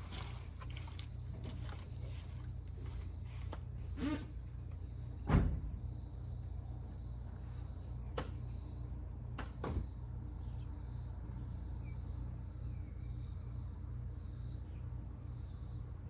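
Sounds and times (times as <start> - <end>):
heavy thud: 5.2 - 5.9.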